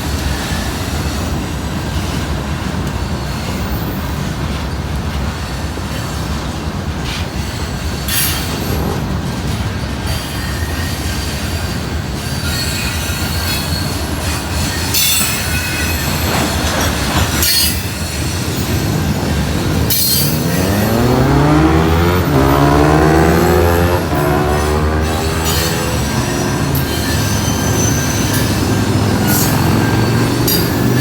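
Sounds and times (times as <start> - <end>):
train wagons rumbling on rails: 0.0 - 31.0
high wheel squeals: 10.1 - 31.0
rising pitched whine: 18.8 - 26.9.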